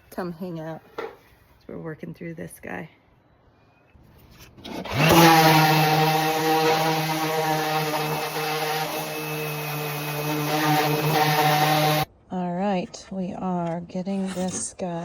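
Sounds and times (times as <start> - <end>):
woodworking power tool running: 4.6 - 12.1.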